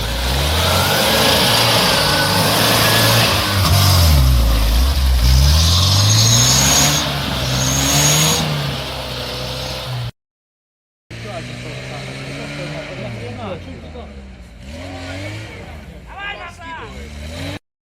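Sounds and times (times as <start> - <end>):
vehicle engine revving under load: 0.0 - 10.1, 11.1 - 16.1, 16.9 - 17.6
wheels churning through mud: 0.0 - 10.1.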